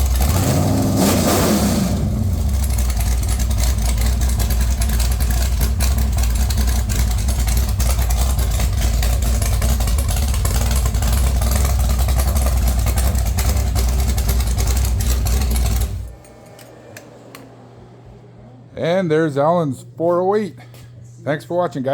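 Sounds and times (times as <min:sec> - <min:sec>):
unmuffled engine running: 0:00.0 - 0:16.4.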